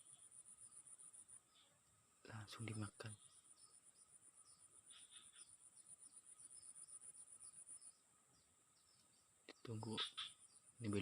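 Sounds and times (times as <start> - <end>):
insect pulsed trill: 0.0 - 11.0.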